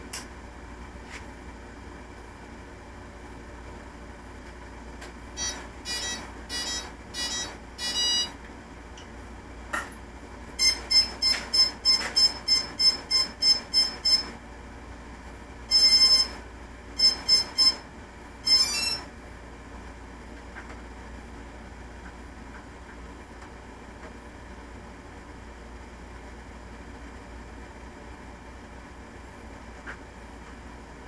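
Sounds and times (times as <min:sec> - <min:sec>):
electronic status beeps: 0:05.4 - 0:08.4, 0:10.6 - 0:14.3, 0:15.7 - 0:16.4, 0:17.0 - 0:17.8, 0:18.4 - 0:19.1.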